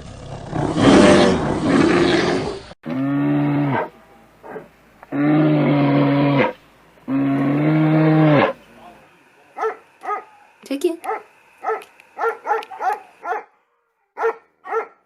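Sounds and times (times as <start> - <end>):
cow mooing: 0.0 - 8.6.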